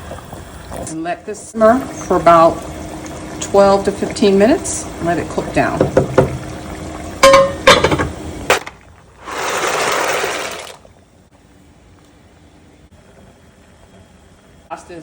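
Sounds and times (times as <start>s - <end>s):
metal cookware clinking: 7.2s - 8.1s.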